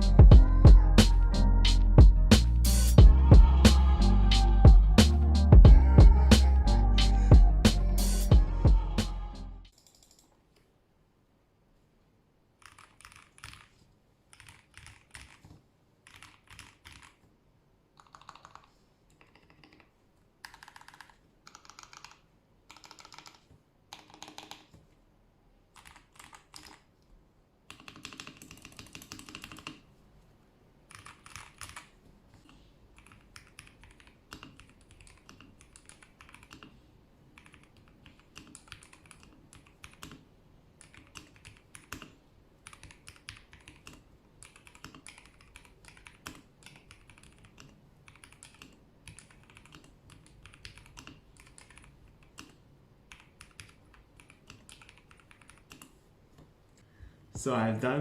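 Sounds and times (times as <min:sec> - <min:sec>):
mechanical keyboard typing: 0:09.7 - 0:10.3, 0:12.6 - 0:17.2, 0:18.0 - 0:24.7, 0:25.8 - 0:26.9, 0:27.7 - 0:29.8, 0:30.9 - 0:32.0, 0:33.0 - 0:36.7, 0:37.4 - 0:40.2, 0:40.8 - 0:55.9.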